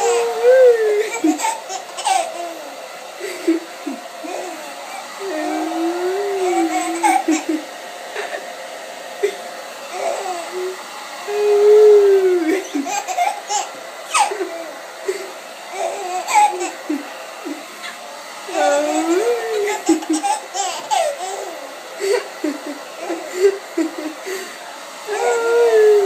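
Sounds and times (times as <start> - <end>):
baby giggling and squealing: 0.0 - 2.7, 3.4 - 7.7, 10.0 - 14.8, 15.8 - 17.6, 18.5 - 24.1.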